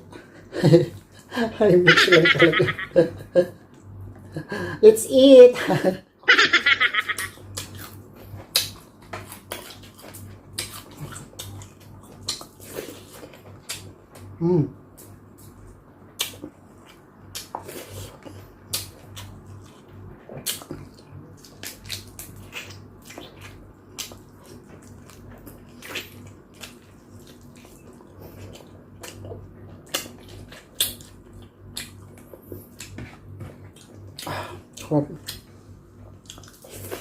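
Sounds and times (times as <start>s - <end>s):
chewing: 7.2s - 13.9s, 16.2s - 37.0s
mouth smacks and clicks: 16.2s - 16.5s.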